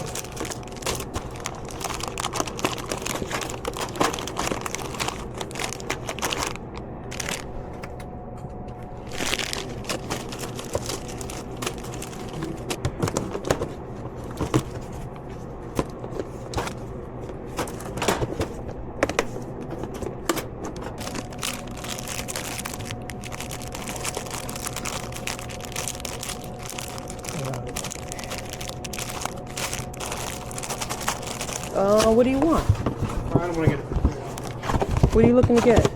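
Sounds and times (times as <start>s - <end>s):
plastic wrappers crinkling: 0.0s - 7.5s, 9.0s - 15.1s, 20.8s - 35.9s
steady low hum: 0.0s - 35.9s.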